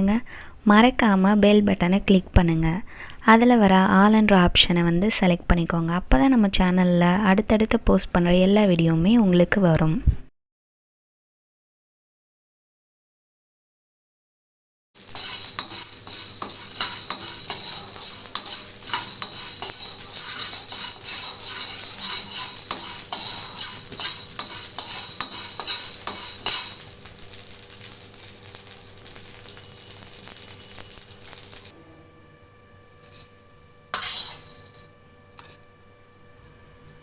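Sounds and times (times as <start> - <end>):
pan sizzling: 15.0 - 31.7, 33.0 - 35.6
spoon scraping a pan: 15.0 - 31.7, 34.0 - 35.6.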